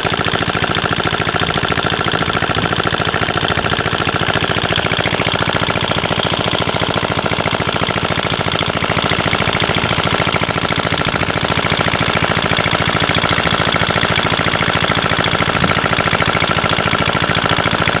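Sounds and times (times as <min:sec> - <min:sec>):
engine chugging: 0:00.0 - 0:18.0.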